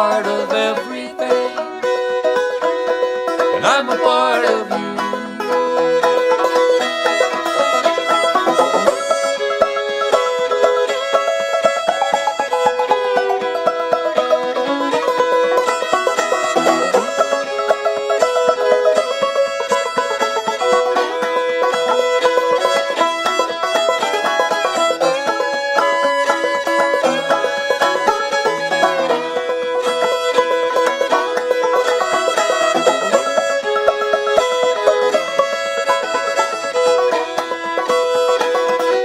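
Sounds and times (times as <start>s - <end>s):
banjo picking: 0.0s - 39.0s
fiddle: 0.0s - 39.0s.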